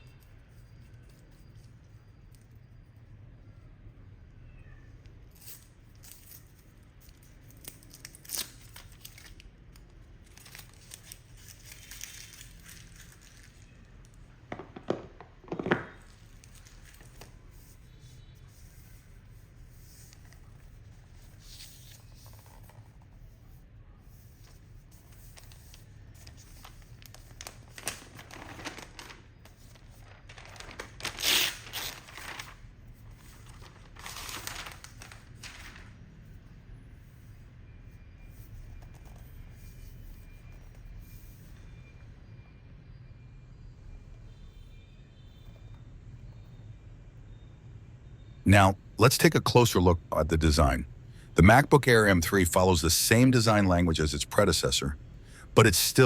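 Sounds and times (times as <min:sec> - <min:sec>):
paper and plastic crinkling: 0:10.2 - 0:13.8, 0:24.5 - 0:36.0.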